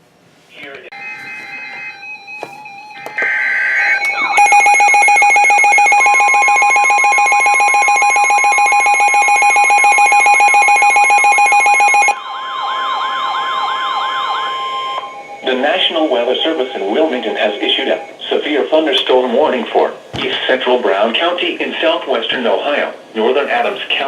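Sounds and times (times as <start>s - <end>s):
steady warning tone: 0.9s - 19.6s
pulsing alarm tone: 1.0s - 18.2s
siren wail: 1.0s - 18.2s
data burst: 3.2s - 18.2s.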